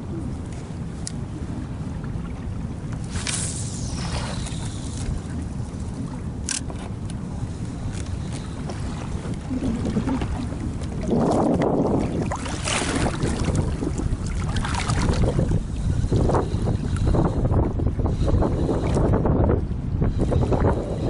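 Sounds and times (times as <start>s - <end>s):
water splashing around a kayak: 0.0s - 21.0s
wind on microphone: 0.0s - 21.0s.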